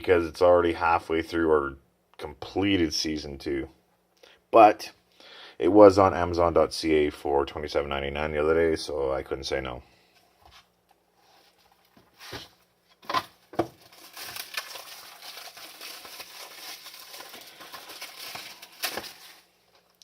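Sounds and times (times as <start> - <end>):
plastic wrapping crinkling: 11.4 - 20.0.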